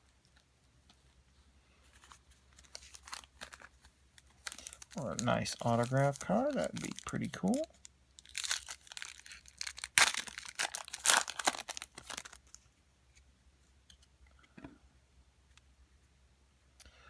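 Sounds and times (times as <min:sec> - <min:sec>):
plastic wrapping tearing and crinkling: 0:02.0 - 0:12.6.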